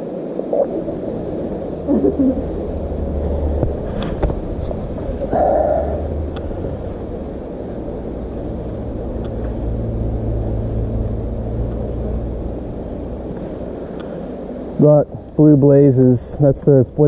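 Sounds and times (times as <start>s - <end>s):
low hum: 0.0s - 17.0s
low rumble: 0.4s - 15.6s.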